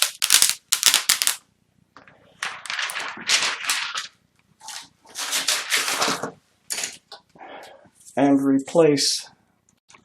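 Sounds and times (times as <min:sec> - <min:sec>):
plastic film peeling: 0:00.0 - 0:01.4, 0:02.4 - 0:06.2.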